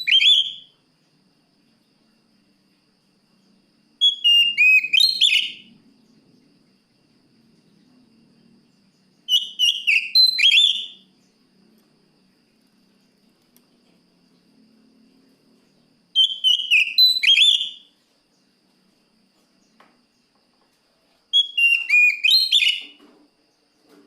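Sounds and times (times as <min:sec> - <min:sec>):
bird whistled song: 0:00.0 - 0:00.8, 0:04.0 - 0:05.8, 0:09.1 - 0:11.4, 0:16.1 - 0:18.0, 0:21.3 - 0:23.1.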